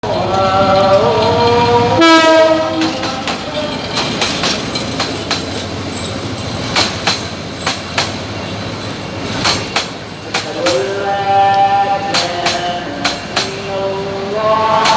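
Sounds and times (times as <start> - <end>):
train wheels clattering over rail joints: 0.0 - 14.9
train horn: 1.9 - 3.2.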